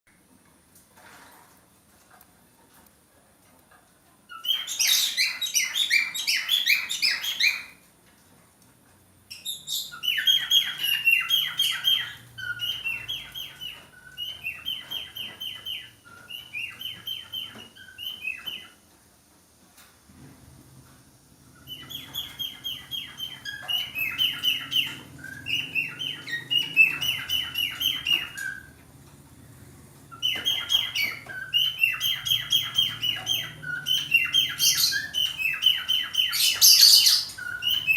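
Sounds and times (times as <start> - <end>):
budgerigar warbling chirps: 30.1 - 37.9.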